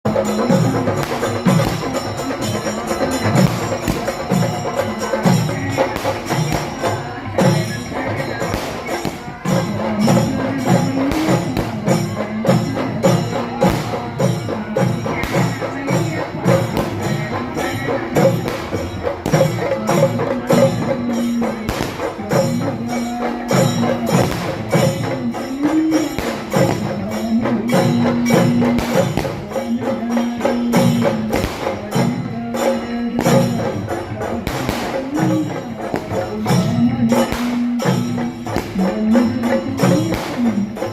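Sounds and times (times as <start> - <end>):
music with percussion beat: 0.0 - 40.9.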